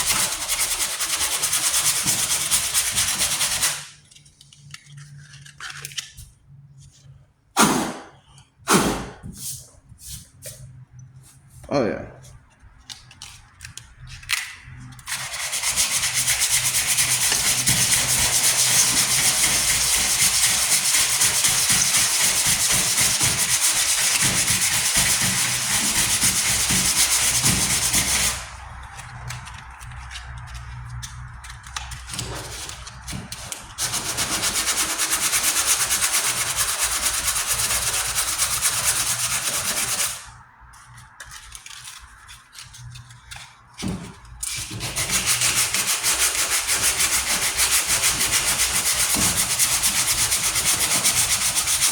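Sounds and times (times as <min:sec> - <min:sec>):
sandpaper scratching on filler: 0:00.0 - 0:04.0, 0:14.8 - 0:43.5, 0:44.5 - 0:51.9.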